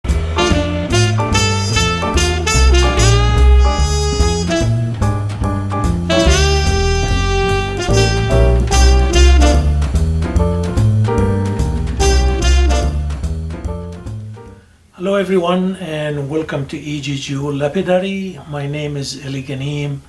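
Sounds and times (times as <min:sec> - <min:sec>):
upbeat jazz with saxophone lead: 0:00.0 - 0:14.6
walking bass line: 0:00.0 - 0:14.6.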